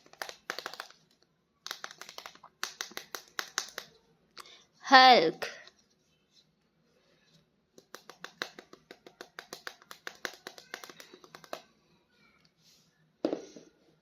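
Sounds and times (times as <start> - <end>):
plastic packaging clicks and taps: 0.0 - 1.0, 1.6 - 3.9, 7.8 - 11.6.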